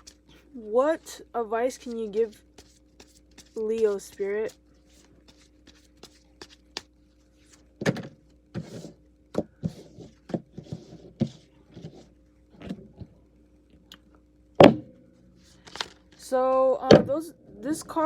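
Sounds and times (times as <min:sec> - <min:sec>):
cards being shuffled: 0:00.0 - 0:00.5, 0:01.7 - 0:08.0, 0:15.4 - 0:16.6
faint steady hum: 0:00.0 - 0:18.0.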